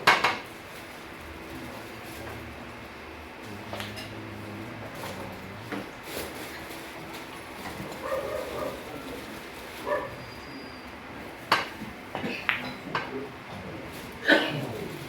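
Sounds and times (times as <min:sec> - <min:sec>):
dog barking: 0:08.0 - 0:09.0, 0:09.8 - 0:10.3.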